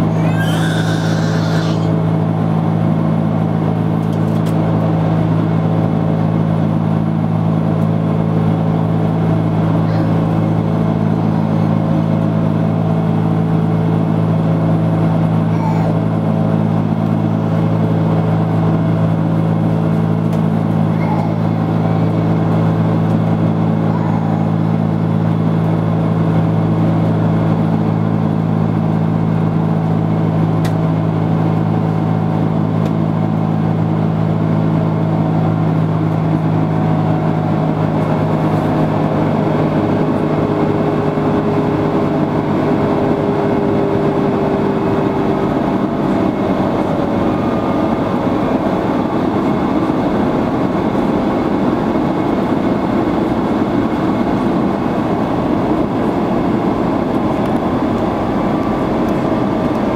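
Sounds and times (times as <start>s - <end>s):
airliner engine drone: 0.0s - 59.9s
cabin air noise: 8.0s - 27.2s.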